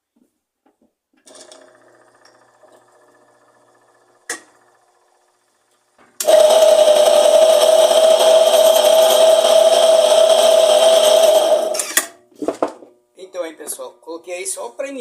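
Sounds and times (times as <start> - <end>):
washing machine running with whine: 1.3 - 11.8.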